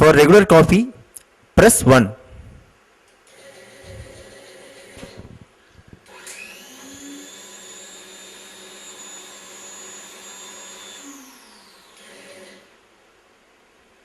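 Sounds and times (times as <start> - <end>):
vending machine motor whine: 3.3 - 12.9.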